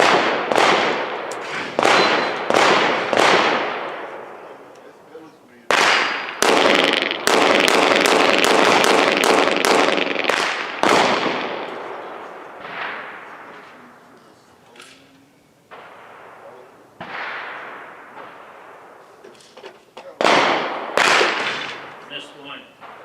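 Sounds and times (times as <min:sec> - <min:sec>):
pistol shots: 0:00.0 - 0:04.7, 0:05.7 - 0:13.4, 0:20.2 - 0:22.0.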